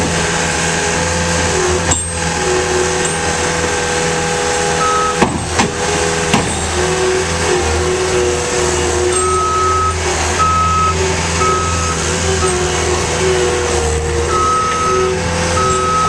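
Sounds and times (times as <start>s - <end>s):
skid steer loader engine: 0.0s - 16.0s
backup alarm beeping: 4.8s - 5.2s, 9.2s - 12.0s, 14.3s - 16.0s
sharp knocks: 5.2s - 6.7s.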